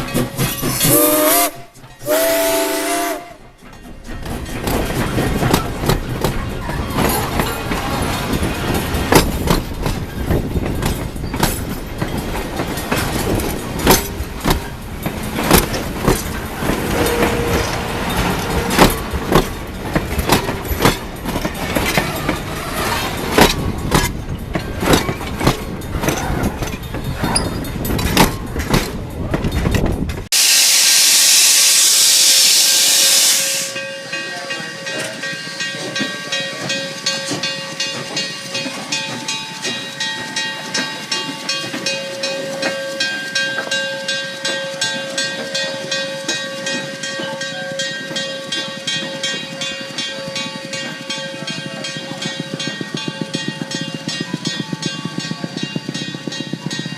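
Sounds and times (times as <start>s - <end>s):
steam locomotive rumbling clatter: 0.0s - 56.9s
loud steam hiss: 30.3s - 34.0s.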